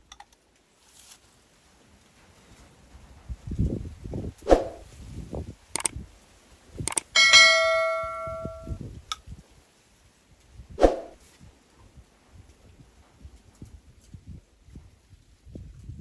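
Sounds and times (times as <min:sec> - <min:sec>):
loud metallic clang: 0:07.2 - 0:08.8.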